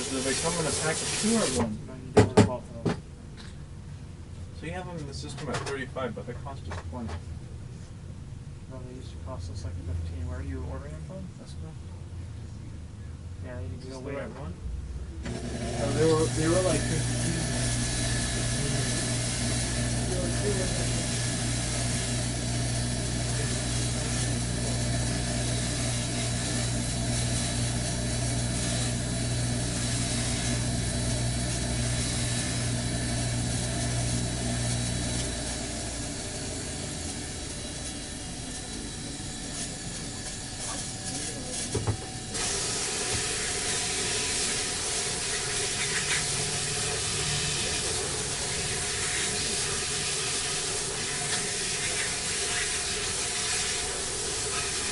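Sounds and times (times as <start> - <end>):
rushing air hiss: 0.0 - 1.6
low electrical hum: 0.0 - 54.9.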